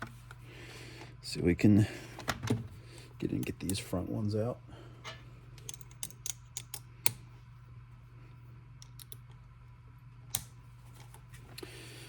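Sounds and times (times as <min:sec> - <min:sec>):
low steady hum: 0:00.0 - 0:12.0
small parts clicking and tapping: 0:05.6 - 0:07.2, 0:08.8 - 0:09.4.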